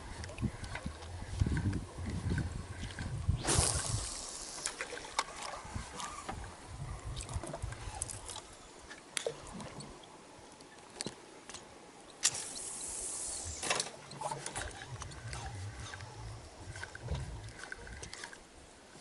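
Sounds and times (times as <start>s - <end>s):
high hiss: 3.4s - 4.8s, 12.2s - 13.9s.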